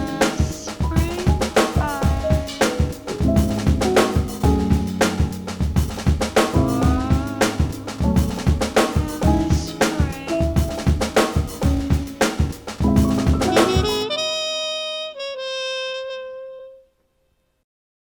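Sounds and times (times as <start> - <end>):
drum-kit beat: 0.0 - 14.3
sustained melodic notes: 2.2 - 14.8.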